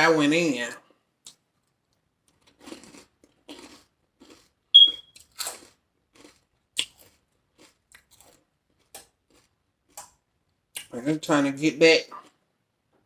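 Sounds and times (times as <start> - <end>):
crunchy chewing: 1.2 - 10.2.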